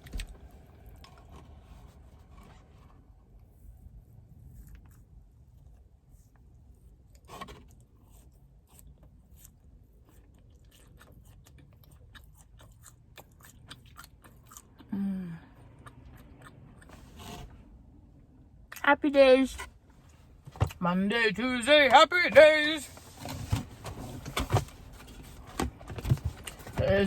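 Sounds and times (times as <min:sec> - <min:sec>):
person chewing with wet clicks: 0:08.5 - 0:17.0.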